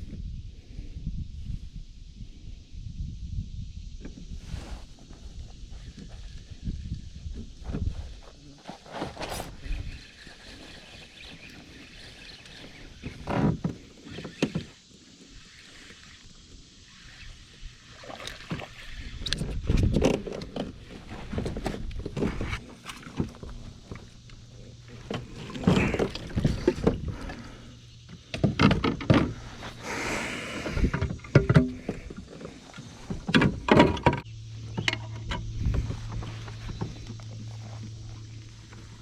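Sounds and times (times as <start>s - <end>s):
hiss: 3.7s - 6.7s, 29.4s - 33.0s.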